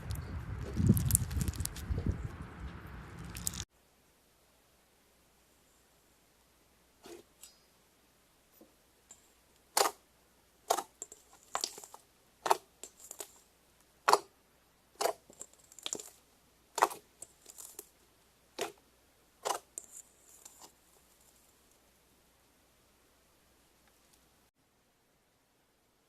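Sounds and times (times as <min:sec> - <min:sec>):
faint slime crackling: 0:00.0 - 0:02.0, 0:03.1 - 0:03.7, 0:10.6 - 0:13.5, 0:15.0 - 0:18.8, 0:19.4 - 0:21.8.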